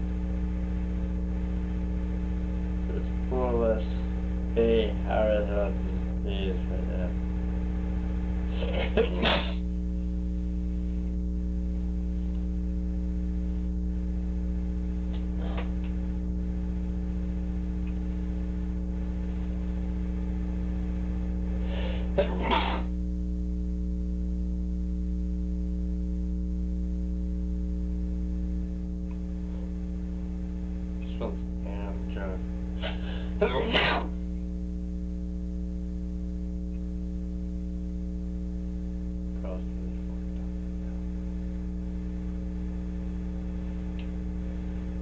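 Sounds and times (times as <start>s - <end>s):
electrical hum: 0.0s - 45.0s
person sneezing: 8.5s - 9.6s, 15.4s - 15.8s, 21.7s - 22.9s, 32.8s - 34.2s.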